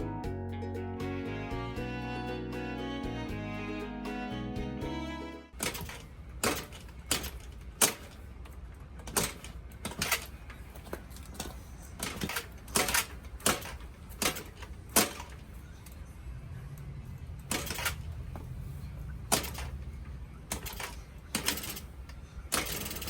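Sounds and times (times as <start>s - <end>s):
sharp clicks and knocks: 5.6s - 15.4s.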